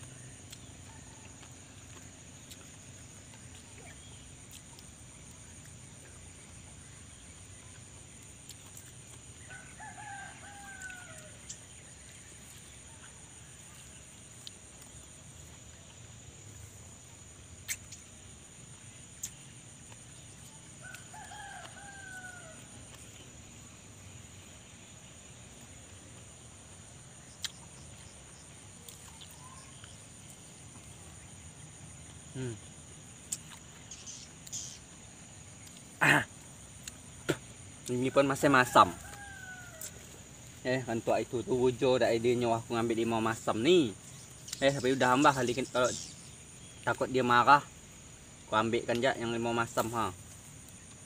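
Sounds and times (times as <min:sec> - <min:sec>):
bird calling: 0:33.4 - 0:35.0.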